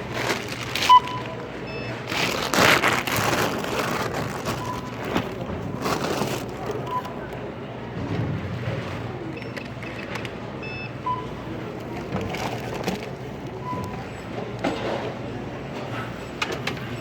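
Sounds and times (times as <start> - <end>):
store hum: 0.0 - 17.0
scanner beeps: 0.9 - 2.1, 9.3 - 11.4
items rustling and knocking: 2.1 - 7.2, 11.8 - 13.9.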